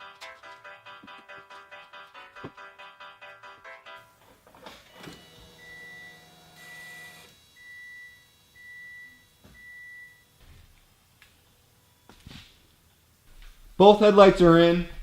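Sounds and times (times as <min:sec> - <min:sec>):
car warning chime beeping: 0:05.3 - 0:10.3.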